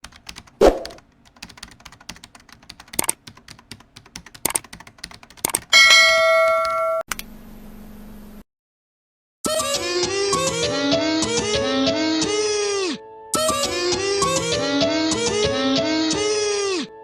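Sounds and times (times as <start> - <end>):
rapid light clicks and clacks: 0.1 - 5.8
bell-like ding: 5.8 - 7.1.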